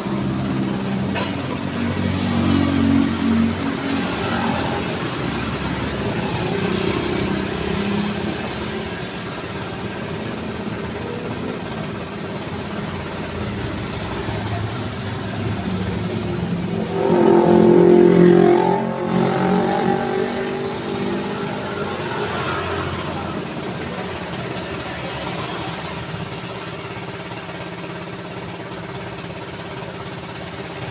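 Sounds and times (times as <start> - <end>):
vehicle engine passing close: 0.0 - 29.0
street traffic: 0.0 - 30.9.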